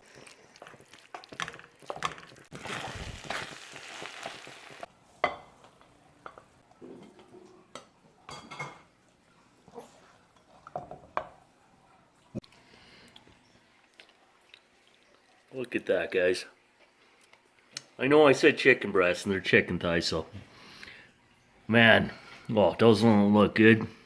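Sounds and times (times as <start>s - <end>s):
rice sizzling in pan: 0.0s - 4.9s.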